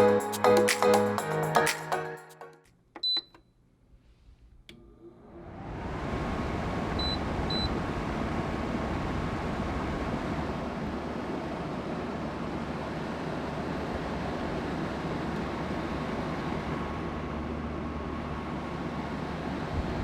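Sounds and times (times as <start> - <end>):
air conditioner fan whoosh: 4.1 - 20.0.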